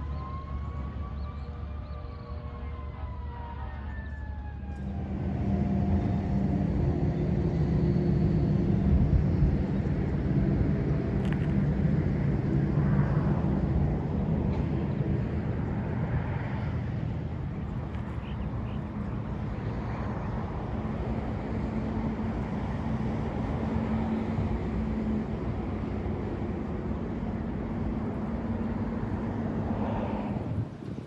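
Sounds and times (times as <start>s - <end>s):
falling siren-like tone: 0.0s - 6.5s.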